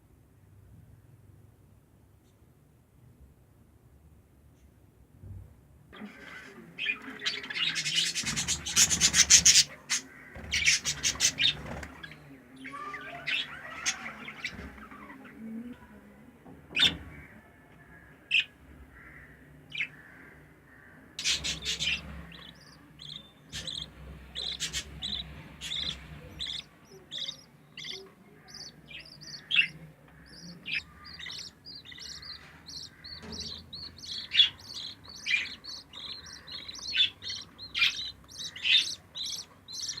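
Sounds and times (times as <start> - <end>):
budgerigars chirping: 6.0 - 15.2, 21.2 - 40.0.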